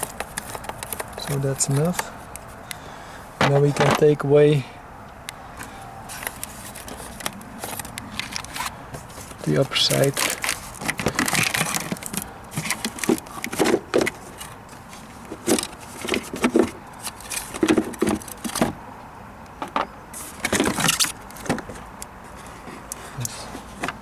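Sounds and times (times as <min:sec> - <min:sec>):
hard plastic knocking and scraping: 0:00.0 - 0:02.2, 0:03.4 - 0:04.0, 0:06.1 - 0:18.8, 0:19.6 - 0:21.9, 0:22.6 - 0:24.0.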